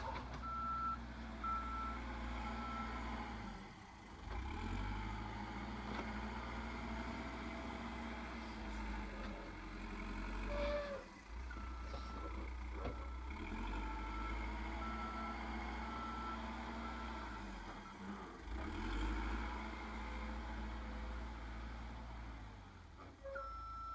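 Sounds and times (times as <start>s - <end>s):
diesel engine running: 0.0s - 23.9s
reversing alarm beeping: 0.4s - 3.0s, 11.5s - 18.0s, 23.3s - 23.9s.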